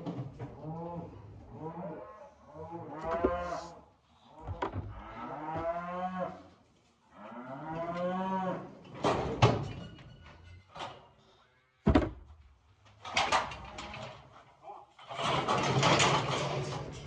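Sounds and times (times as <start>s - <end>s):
cattle mooing: 0.7s - 3.8s, 4.9s - 6.4s.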